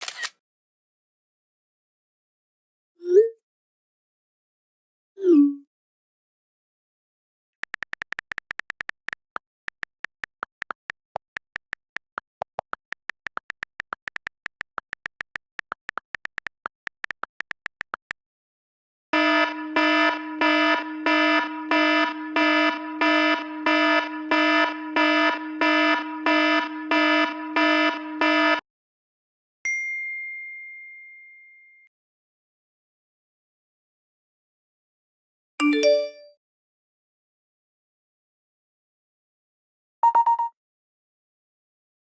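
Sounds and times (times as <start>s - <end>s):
phone key clicks: 7.6s - 18.2s
pulsing electronic alarm tone: 19.2s - 28.6s.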